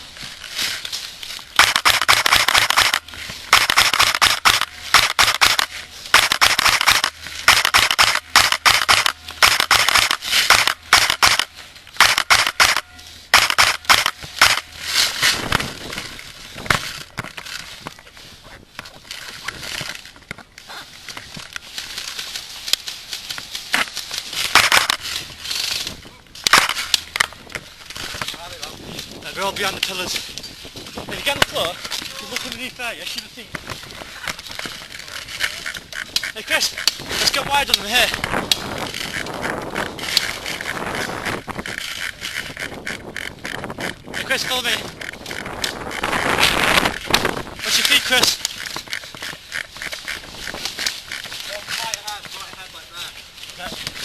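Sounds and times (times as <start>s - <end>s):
airsoft guns firing bursts: 1.6s - 14.7s, 24.4s - 25.0s.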